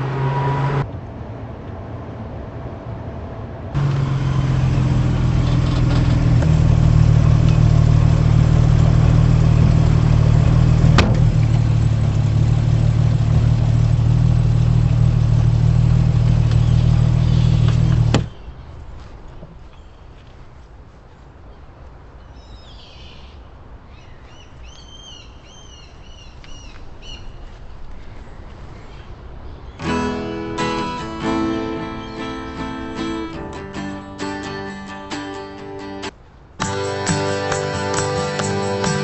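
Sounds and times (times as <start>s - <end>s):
engine drone with low hum: 0.0s - 20.4s.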